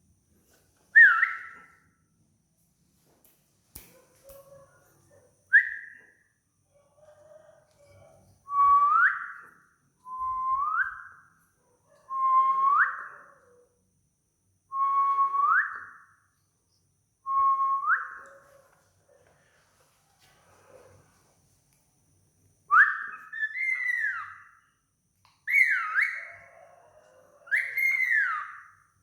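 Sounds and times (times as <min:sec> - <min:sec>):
upward sweeping whistles: 0:22.7 - 0:24.5.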